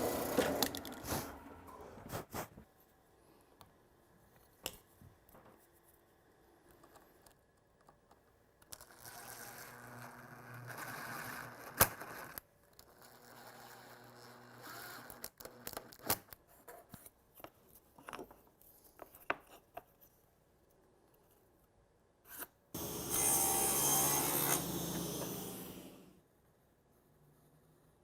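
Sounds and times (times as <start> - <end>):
loud humming mechanical noise: 22.8 - 26.1.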